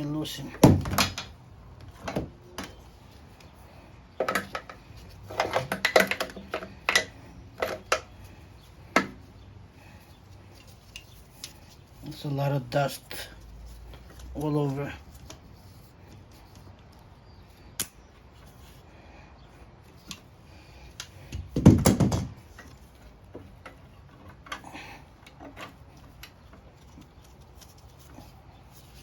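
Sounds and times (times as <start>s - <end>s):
tools and metal parts clicking: 4.2s - 9.2s, 10.4s - 11.7s, 22.4s - 28.2s
loud rattling knock: 21.5s - 22.4s.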